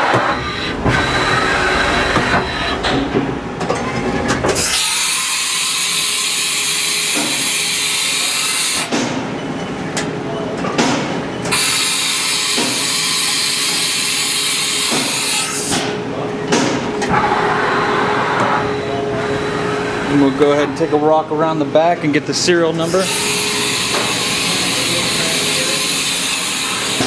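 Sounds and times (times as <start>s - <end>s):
cnc machine running: 0.0s - 8.8s, 22.5s - 27.0s.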